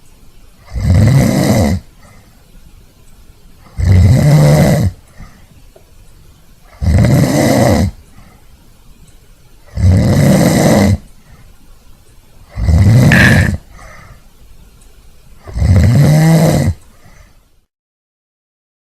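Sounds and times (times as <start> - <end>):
man snoring loudly: 0.7 - 1.9, 3.7 - 5.0, 6.7 - 8.0, 9.7 - 11.0, 12.5 - 13.6, 15.5 - 16.8
quiet breathing: 1.8 - 3.8, 4.8 - 15.6, 16.5 - 17.7.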